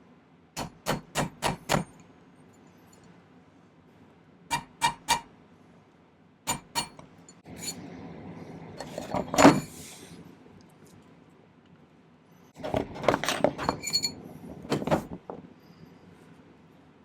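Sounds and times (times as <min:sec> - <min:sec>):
hammer tapping on metal: 0:00.6 - 0:02.0, 0:04.5 - 0:05.3, 0:06.5 - 0:07.0
scraping and handling noise: 0:08.8 - 0:10.0, 0:12.6 - 0:16.5.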